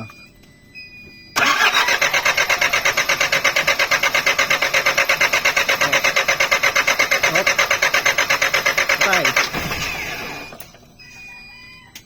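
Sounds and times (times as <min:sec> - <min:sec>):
car engine cranking: 0:01.4 - 0:10.7.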